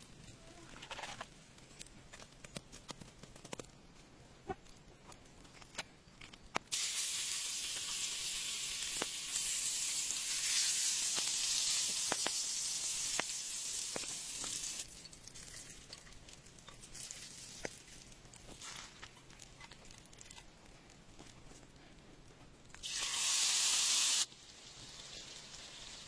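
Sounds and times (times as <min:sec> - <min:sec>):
food sizzling in hot oil: 0:06.7 - 0:16.0, 0:22.8 - 0:26.0.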